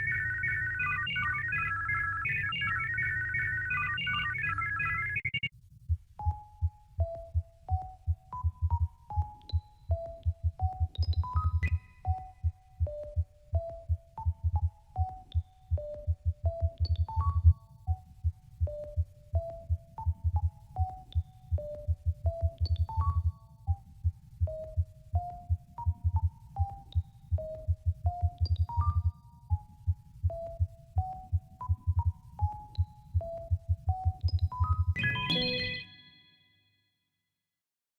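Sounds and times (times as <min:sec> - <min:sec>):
synthesized alarm melody: 0:00.0 - 0:05.5, 0:34.9 - 0:36.3
high pings: 0:35.0 - 0:36.5.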